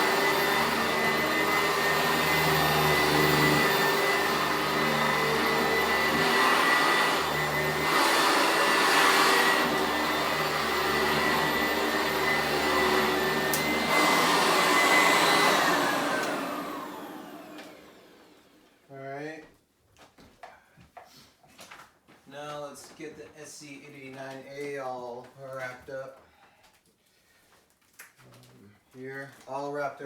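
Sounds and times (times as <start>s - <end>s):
vacuum cleaner motor whine: 0.0s - 18.8s.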